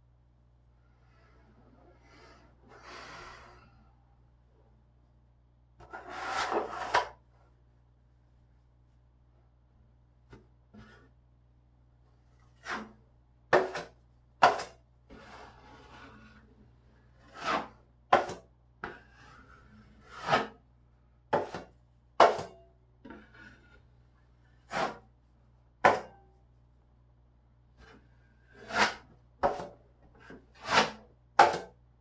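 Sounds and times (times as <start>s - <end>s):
hand tool scraping drywall: 5.8s - 7.2s, 10.7s - 11.2s, 12.4s - 13.0s, 13.6s - 20.6s, 23.1s - 25.1s, 27.8s - 31.1s.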